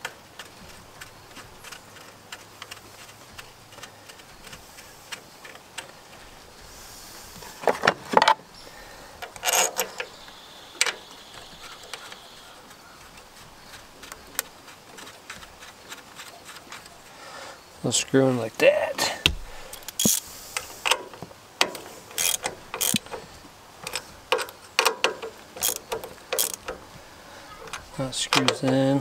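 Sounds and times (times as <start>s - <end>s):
metallic clicks of screws and tool: 9.2s - 10.1s, 19.7s - 26.8s
tool clattering: 9.2s - 10.1s, 20.9s - 26.9s.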